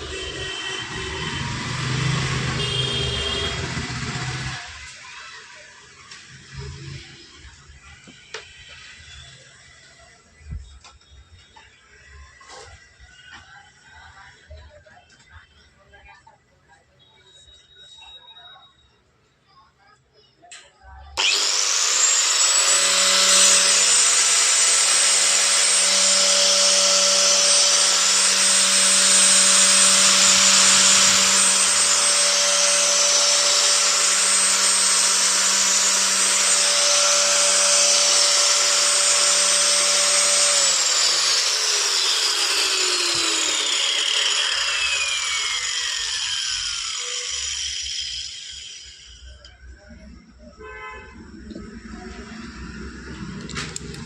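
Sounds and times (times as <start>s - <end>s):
angle grinder whining: 0.0s - 9.0s, 21.2s - 49.8s.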